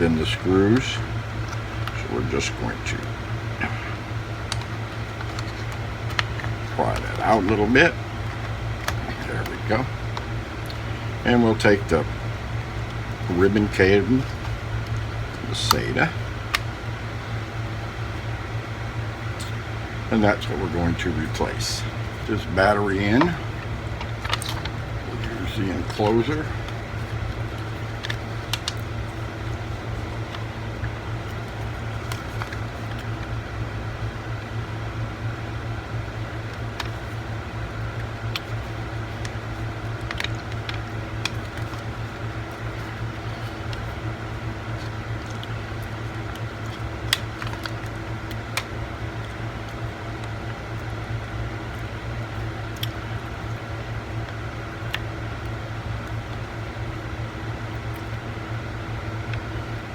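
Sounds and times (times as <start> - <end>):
low machine hum: 0.0 - 59.9
light clicks and taps of small parts: 38.1 - 41.9.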